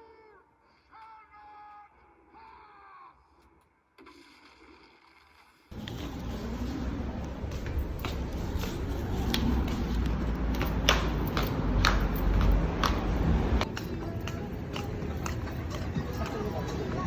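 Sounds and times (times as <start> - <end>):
footsteps on a hard surface: 5.7 - 17.0.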